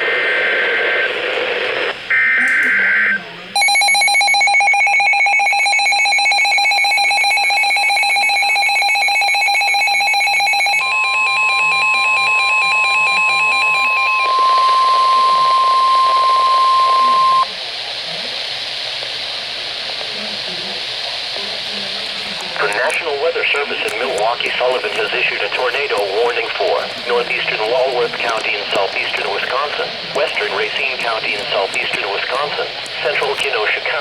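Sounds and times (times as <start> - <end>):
radio static hiss: 0.0 - 3.5, 13.1 - 34.0
steady warning tone: 7.0 - 17.5, 21.5 - 34.0
harsh buzzing attention signal: 10.2 - 17.4, 22.6 - 34.0.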